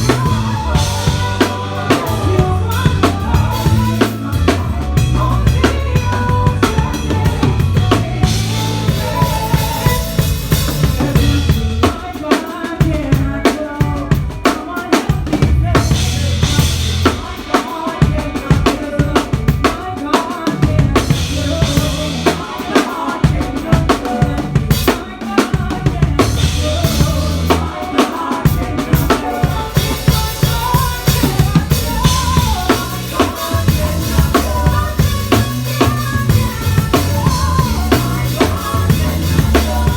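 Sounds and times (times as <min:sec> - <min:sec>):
sustained bass notes: 0:00.0 - 0:12.0, 0:15.4 - 0:17.2, 0:20.7 - 0:22.4, 0:26.0 - 0:27.8, 0:28.6 - 0:39.9
drum kit groove: 0:00.0 - 0:39.9
pitched band instruments: 0:00.0 - 0:39.9.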